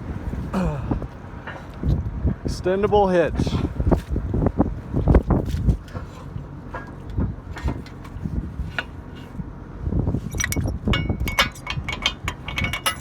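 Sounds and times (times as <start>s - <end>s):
metal knocks and thumps from hitch: 10.1s - 13.0s
sharp ringing metal clinks: 10.3s - 13.0s.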